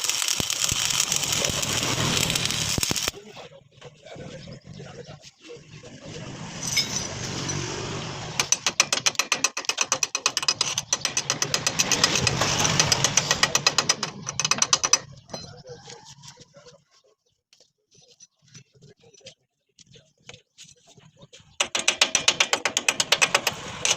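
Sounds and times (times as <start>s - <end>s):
steady hiss: 0.0s - 3.2s
rapid even clicking: 8.4s - 15.1s, 21.6s - 23.9s.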